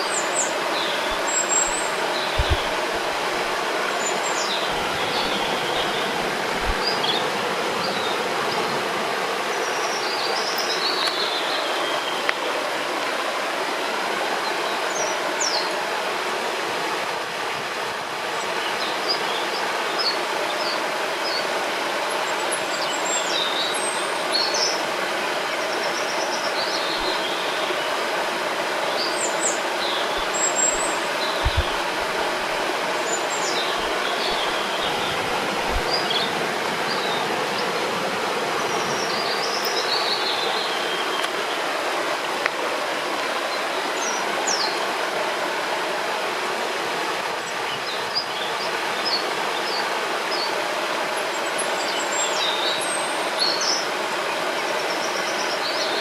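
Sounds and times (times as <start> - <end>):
small birds chirping: 0.0 - 8.6, 28.9 - 37.7
rushing river water: 0.0 - 56.0.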